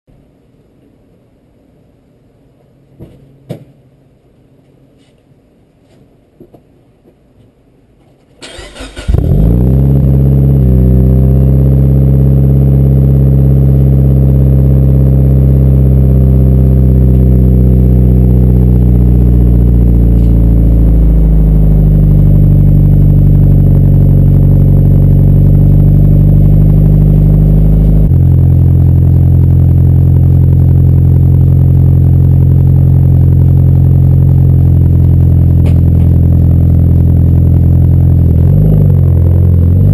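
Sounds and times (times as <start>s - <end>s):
engine cranking: 8.4s - 9.2s
car engine idling loudly: 16.8s - 38.4s.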